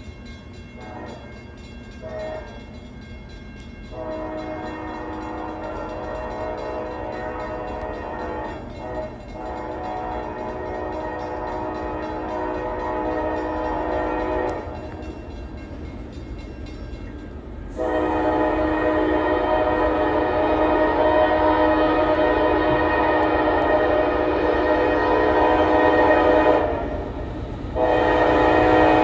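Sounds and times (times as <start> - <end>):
locomotive horn chord blasts: 0.8 - 1.3, 3.9 - 15.1, 17.8 - 27.0, 27.8 - 29.0.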